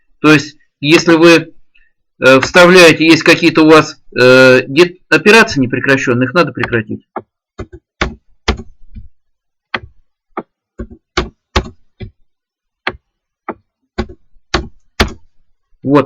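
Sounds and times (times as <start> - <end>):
computer keys and mouse clicking: 6.6 - 9.1, 9.7 - 12.2, 12.8 - 15.3.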